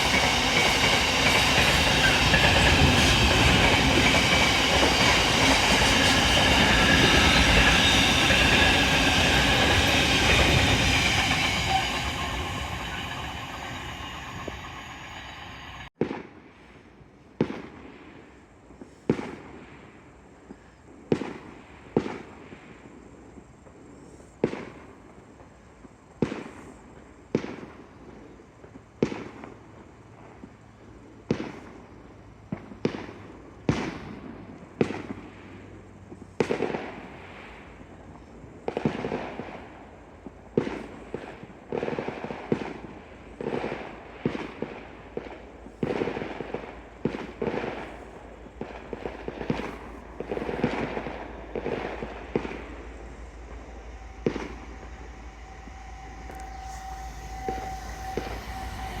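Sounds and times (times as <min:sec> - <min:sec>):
fireworks bangs echoing: 0:41.8 - 0:53.0.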